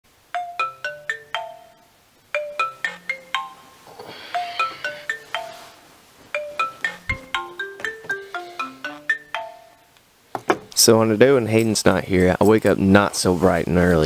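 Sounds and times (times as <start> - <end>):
marimba-like mallet melody: 0.3 - 10.0.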